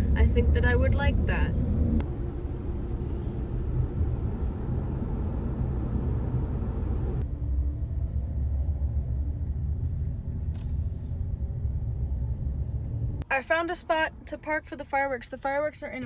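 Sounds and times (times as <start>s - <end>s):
vehicle road rumble from inside: 0.0s - 16.0s.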